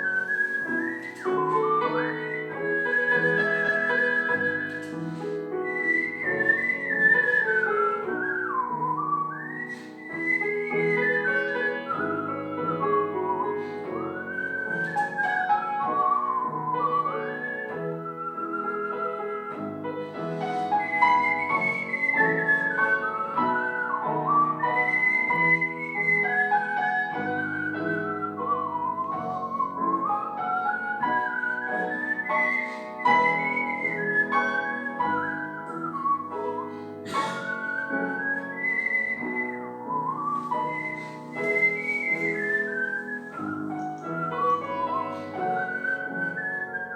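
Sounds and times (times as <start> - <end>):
piano accompaniment: 0.0 - 46.9
whistled melody: 0.0 - 46.9.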